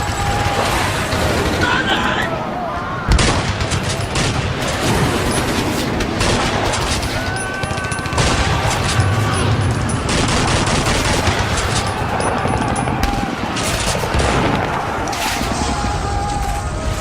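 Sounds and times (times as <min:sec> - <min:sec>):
rapid gunfire: 0:00.0 - 0:02.2, 0:03.1 - 0:17.0.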